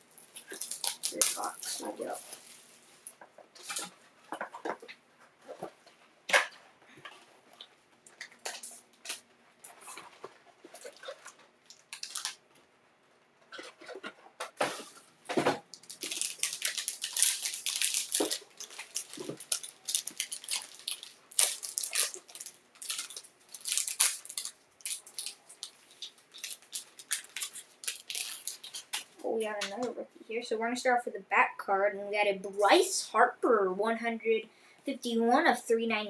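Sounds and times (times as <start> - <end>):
plastic wrapping crinkling and tearing: 0.0 - 4.8, 8.1 - 12.4, 13.5 - 29.8.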